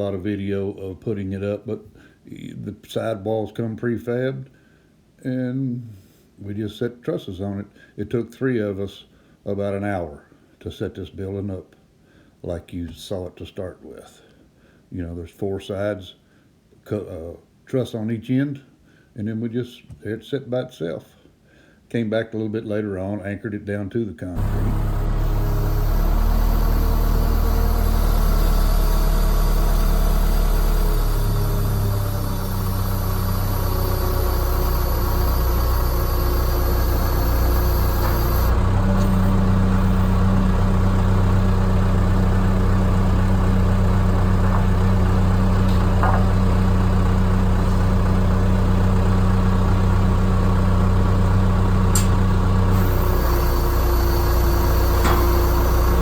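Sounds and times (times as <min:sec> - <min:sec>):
engine idling: 0:24.4 - 0:56.0.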